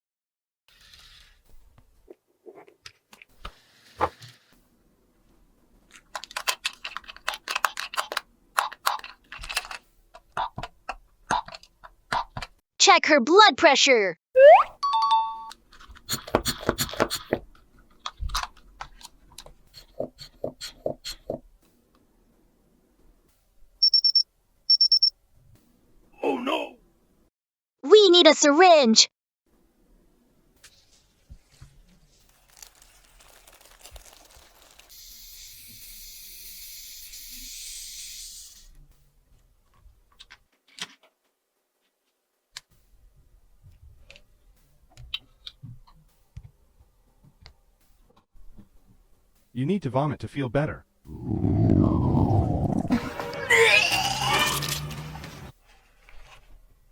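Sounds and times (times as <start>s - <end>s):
rapid high-pitched electronic beeps: 23.8s - 25.1s.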